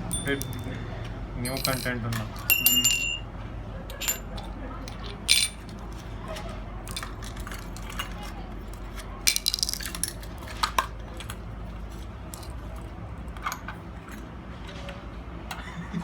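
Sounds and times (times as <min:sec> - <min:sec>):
small parts clicking and clinking: 0:00.0 - 0:00.8, 0:01.4 - 0:03.2, 0:03.9 - 0:14.3
steady low hum: 0:00.0 - 0:05.9.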